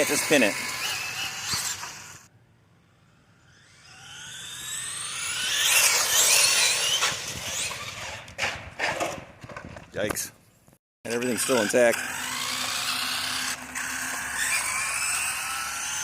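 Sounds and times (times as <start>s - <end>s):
electric motor whining: 0.0s - 8.2s, 11.1s - 16.0s
tyre noise on asphalt: 5.6s - 10.8s.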